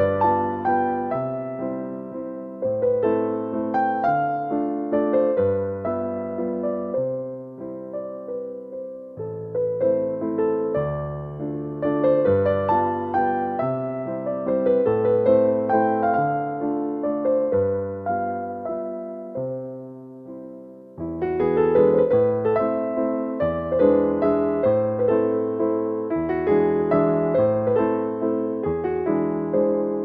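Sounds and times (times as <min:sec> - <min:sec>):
slow gentle piano music: 0:00.0 - 0:30.0.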